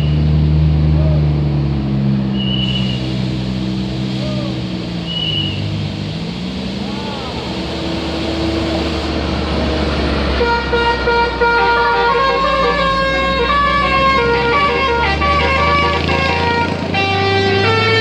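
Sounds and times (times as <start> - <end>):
bus engine rumbling: 0.0 - 18.0
bus horn playing a melody: 10.3 - 18.0.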